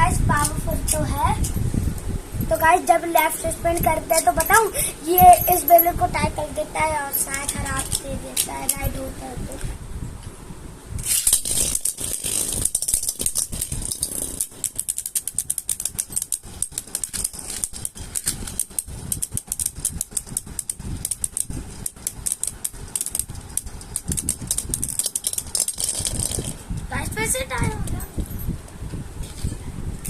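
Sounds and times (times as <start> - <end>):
spinning tops clicking and rattling: 2.5 - 9.1, 11.0 - 28.4.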